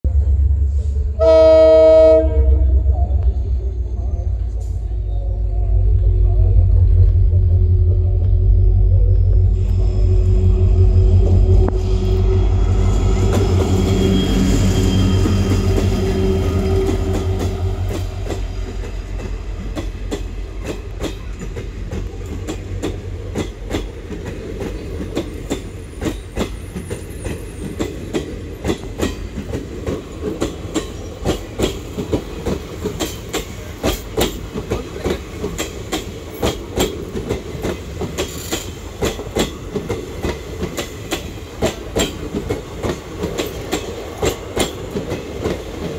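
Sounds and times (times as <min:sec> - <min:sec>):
locomotive engine passing: 0:00.1 - 0:45.9
train wheels clickety-clack: 0:11.2 - 0:45.9.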